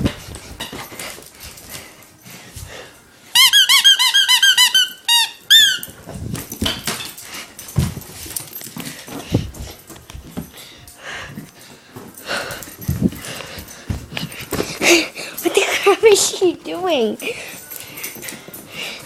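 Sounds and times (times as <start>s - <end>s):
squeaky dog toy squeaking: 3.4s - 5.9s.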